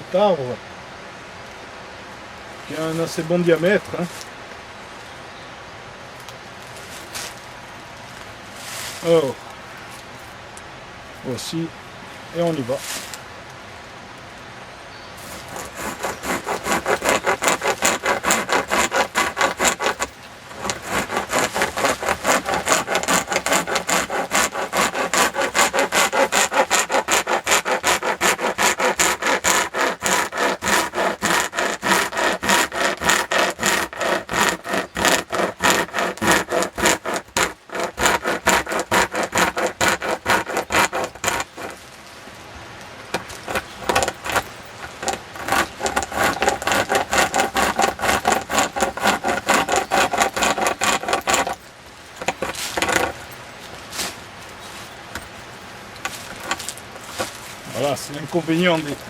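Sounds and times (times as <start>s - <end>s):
chain rasping through wood: 15.3s - 41.8s, 43.1s - 53.4s, 56.0s - 57.4s.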